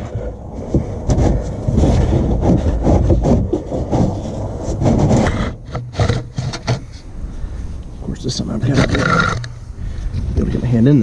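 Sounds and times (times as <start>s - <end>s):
hands and tools scraping oil filter: 1.1s - 7.1s.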